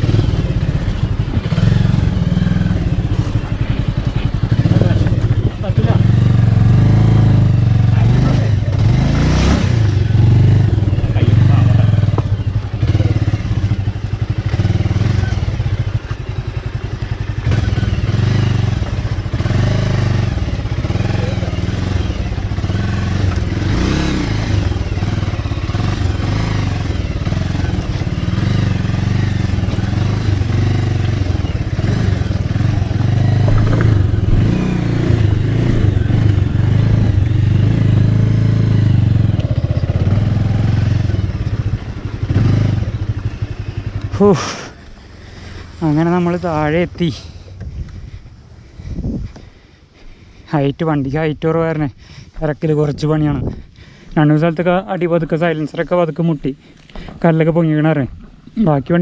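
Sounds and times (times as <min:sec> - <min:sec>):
motorcycle engine at low revs: 0:00.0 - 0:59.0
bike clattering over rocks: 0:33.4 - 0:34.4.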